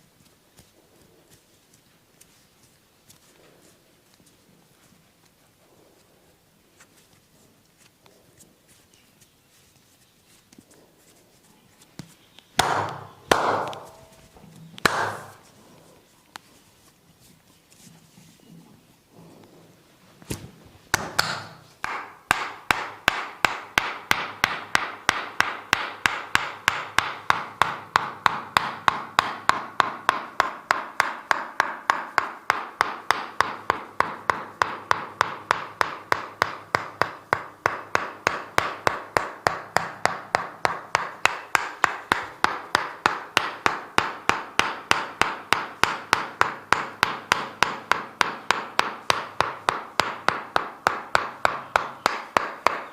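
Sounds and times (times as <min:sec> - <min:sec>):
massage hammer tapping: 0:12.6 - 0:15.4, 0:20.9 - 0:52.9.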